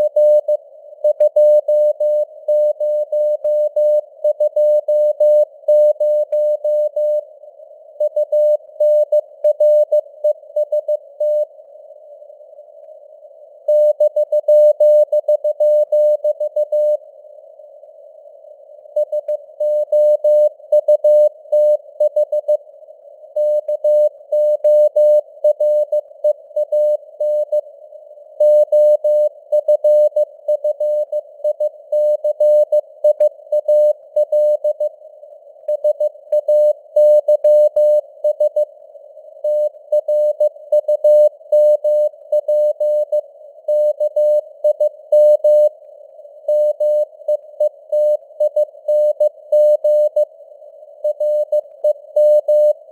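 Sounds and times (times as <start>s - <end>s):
morse code tone: 1.1s - 7.2s, 8.0s - 10.0s, 13.7s - 17.0s, 19.0s - 22.6s, 23.4s - 26.0s, 26.6s - 27.6s, 28.4s - 34.9s, 35.7s - 38.7s, 39.5s - 45.7s, 46.5s - 50.3s, 51.0s - 52.9s.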